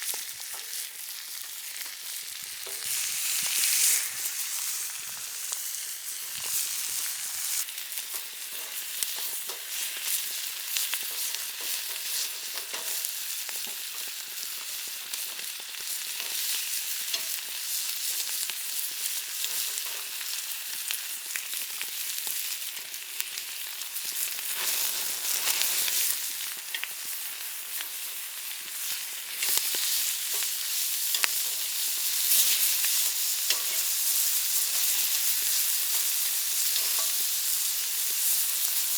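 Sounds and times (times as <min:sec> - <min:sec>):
wood fire crackling and popping: 0:01.8 - 0:07.7.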